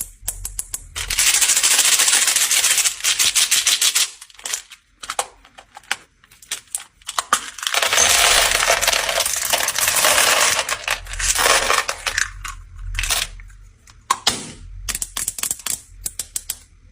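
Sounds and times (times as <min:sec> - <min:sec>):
hard candies clattering: 0:01.0 - 0:13.4.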